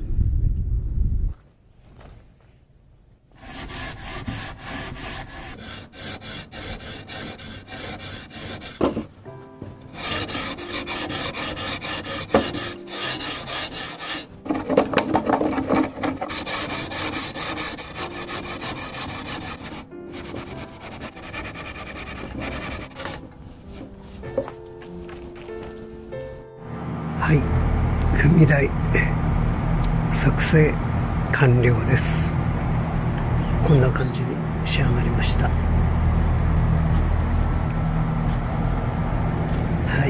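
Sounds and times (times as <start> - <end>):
hand sanding wood: 3.4 - 9.1, 9.9 - 25.9.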